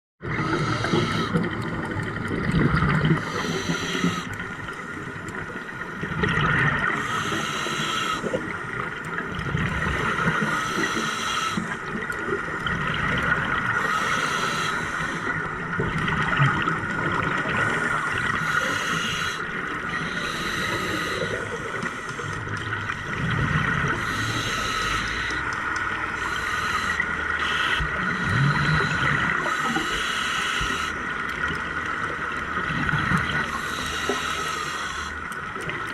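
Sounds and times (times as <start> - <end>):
scuba regulator breathing: 0.3 - 2.2, 3.0 - 8.7, 9.6 - 15.8, 17.1 - 31.6, 33.3 - 35.9.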